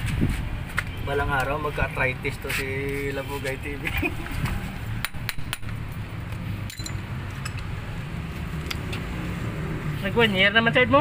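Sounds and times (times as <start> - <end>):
hand tools clinking on metal: 6.6 - 7.7.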